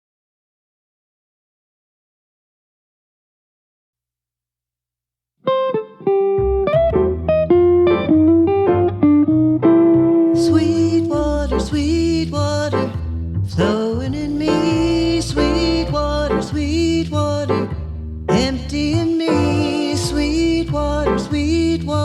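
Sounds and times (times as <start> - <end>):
gentle guitar-led song intro: 5.4 - 22.0.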